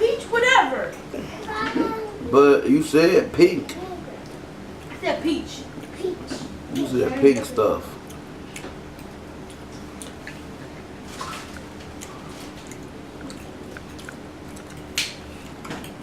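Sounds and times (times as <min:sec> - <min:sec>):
people chewing: 0:03.7 - 0:16.0.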